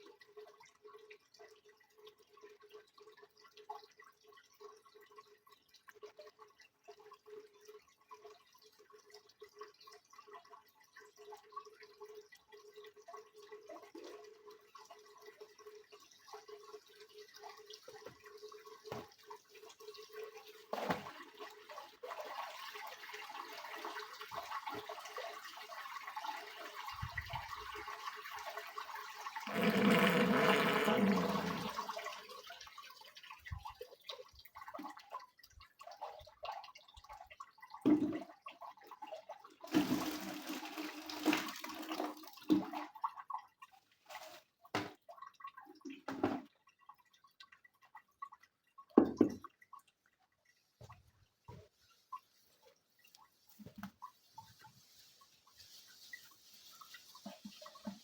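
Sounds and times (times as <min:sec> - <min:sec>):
water dripping and trickling: 0:00.0 - 0:58.0
rush of water: 0:29.5 - 0:32.1.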